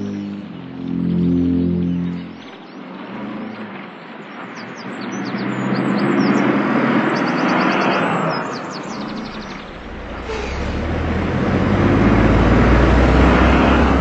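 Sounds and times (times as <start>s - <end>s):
road vehicle passing by: 0.0s - 14.0s
rapid high bird chirps: 4.7s - 10.2s.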